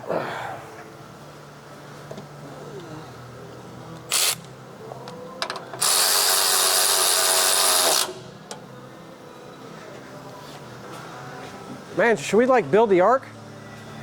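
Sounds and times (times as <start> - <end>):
handheld power tool running: 5.8 - 8.2.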